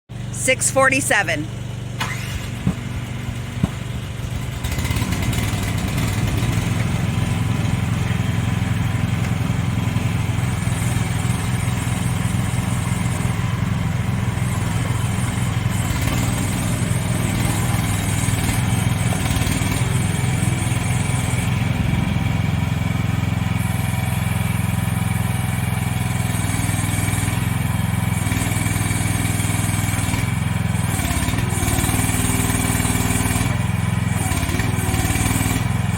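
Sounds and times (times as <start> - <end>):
excavator engine running: 0.1 - 25.7.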